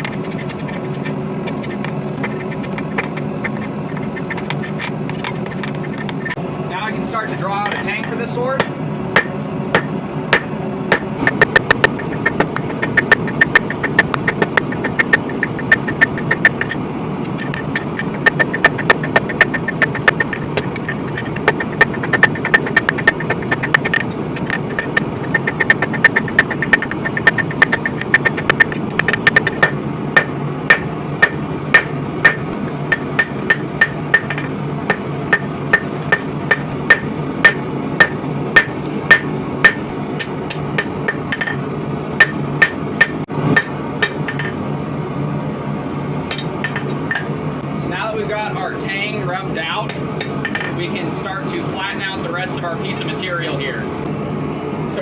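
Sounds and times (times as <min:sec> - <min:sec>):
hammer ringing on hot steel: 0:08.6 - 0:11.1, 0:29.5 - 0:41.6, 0:42.2 - 0:44.6, 0:46.3 - 0:47.3.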